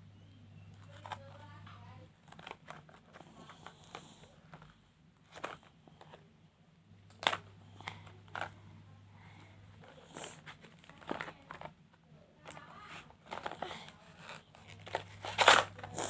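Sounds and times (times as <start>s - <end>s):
plastic packaging crinkling: 12.4s - 16.0s.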